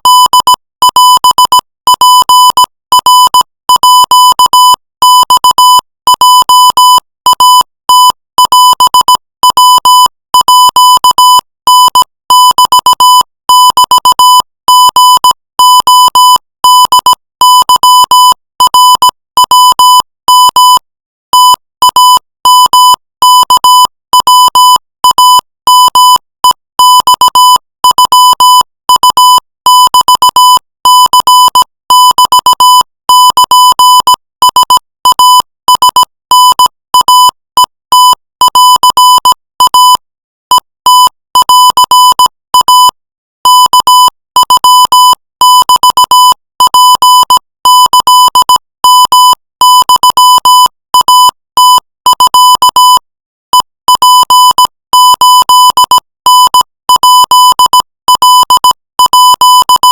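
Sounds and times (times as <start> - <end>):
morse code beeps: 5.2 - 26.2.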